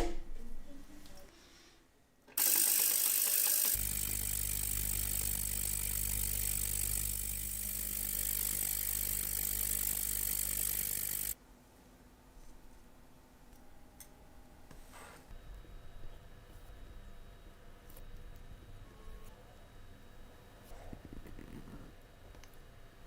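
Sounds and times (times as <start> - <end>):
machine humming and hissing: 2.4 - 11.4.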